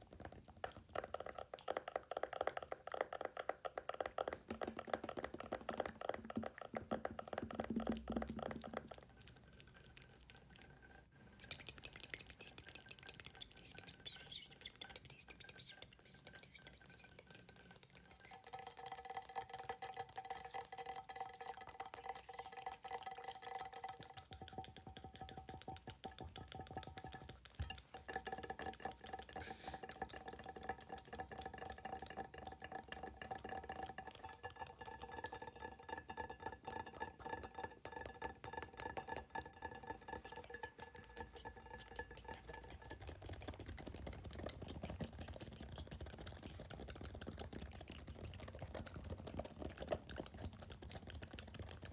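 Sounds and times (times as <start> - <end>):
fast fingernail tapping: 0.0 - 8.9, 39.8 - 51.9.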